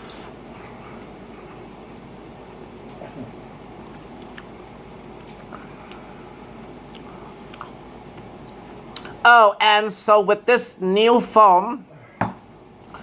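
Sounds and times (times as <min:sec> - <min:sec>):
low room hum: 0:00.0 - 0:13.0
person chewing food: 0:03.6 - 0:09.2.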